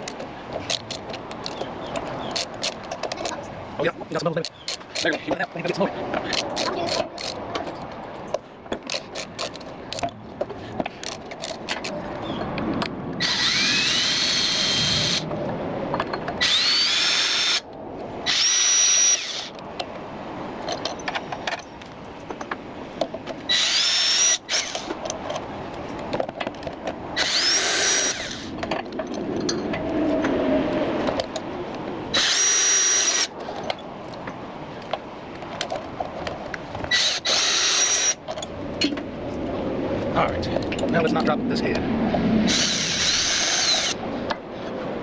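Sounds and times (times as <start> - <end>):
power drill whining: 13.2 - 15.2, 16.4 - 17.6, 18.3 - 19.5, 23.5 - 24.9, 27.2 - 28.5, 32.2 - 33.3, 36.9 - 38.2, 42.5 - 44.0.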